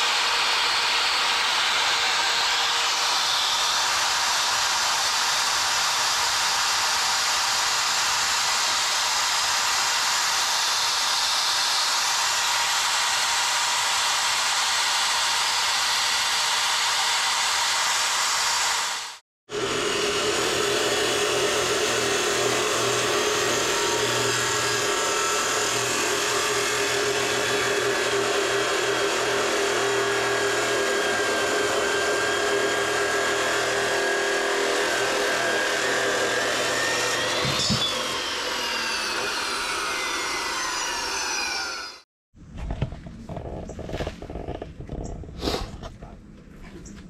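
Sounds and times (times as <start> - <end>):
angle grinder on steel: 0.0 - 42.1
grinder disc winding down: 19.5 - 42.0.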